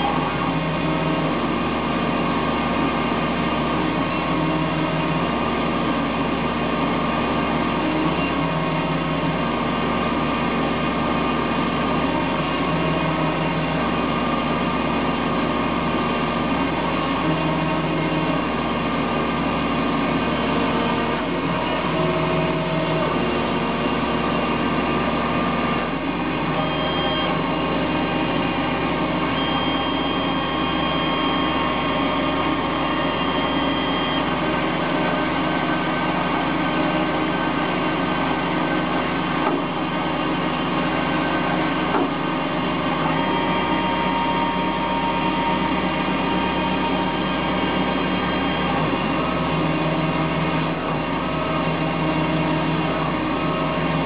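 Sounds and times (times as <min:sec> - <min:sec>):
lathe machine hum: 0:00.0 - 0:54.0
machine whining tones: 0:26.4 - 0:54.0.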